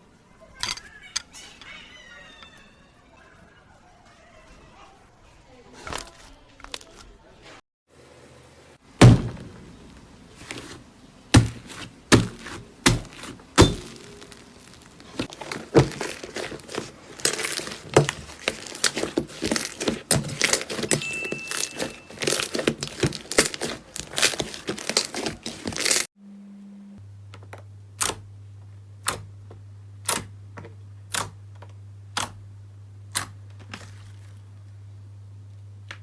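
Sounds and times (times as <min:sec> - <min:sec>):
crunchy material cracking: 0:09.0 - 0:26.1.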